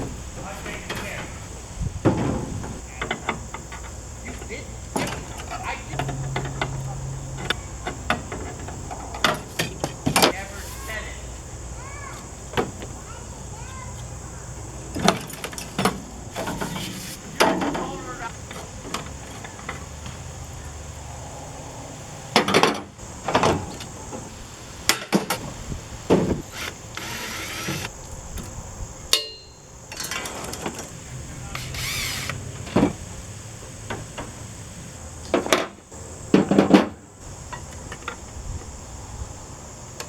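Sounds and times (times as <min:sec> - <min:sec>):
tools clanking on metal: 0:00.0 - 0:11.0, 0:14.9 - 0:20.3, 0:29.1 - 0:33.0
ringing metal strike: 0:29.1 - 0:29.7.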